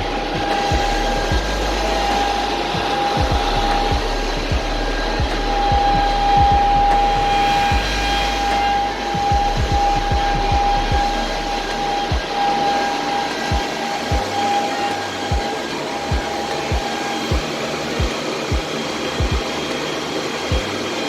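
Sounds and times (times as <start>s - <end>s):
cooling fans whooshing and whining: 0.0s - 21.0s.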